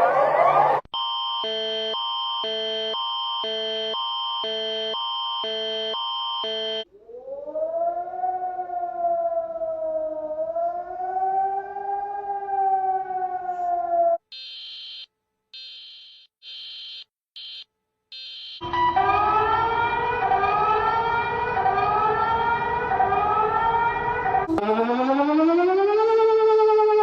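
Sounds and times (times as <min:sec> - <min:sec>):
pulsing electronic alarm: 0:00.0 - 0:08.1, 0:14.4 - 0:17.6, 0:18.2 - 0:27.0
siren rising and swaying in pitch: 0:00.0 - 0:14.2, 0:18.2 - 0:27.0.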